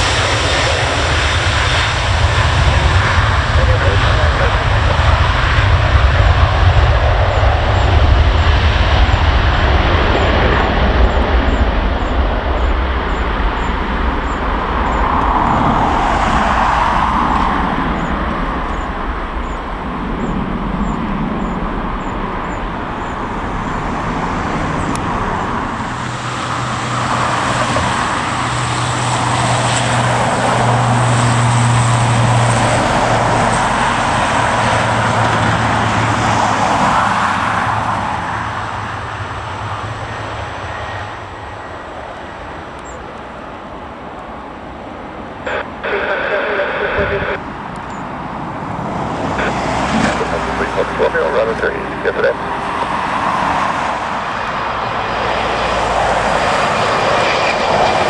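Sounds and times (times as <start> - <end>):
steady low hum: 0.0 - 34.4, 45.4 - 48.4
airport and road traffic rumble: 0.0 - 58.0.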